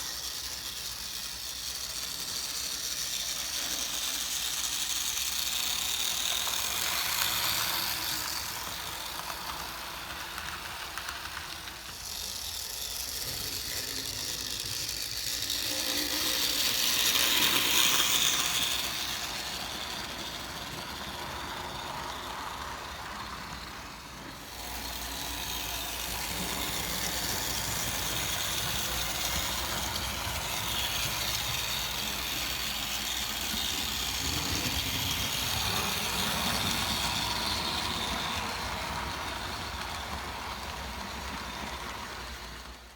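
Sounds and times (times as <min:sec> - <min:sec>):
model train motor whirring: 0:00.0 - 0:42.9
wheels rattling on track: 0:00.0 - 0:42.9.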